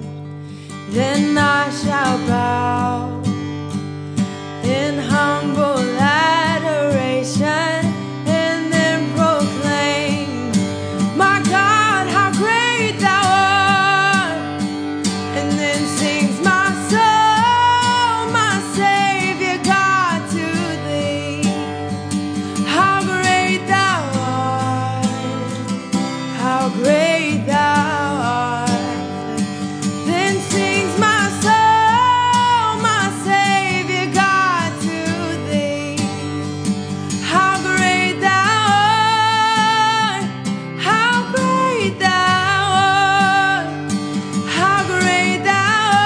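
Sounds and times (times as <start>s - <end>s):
acoustic guitar: 0.0s - 46.0s
person singing a hymn: 22.6s - 25.7s, 26.3s - 29.4s, 30.1s - 36.0s, 37.2s - 43.8s, 44.5s - 46.0s.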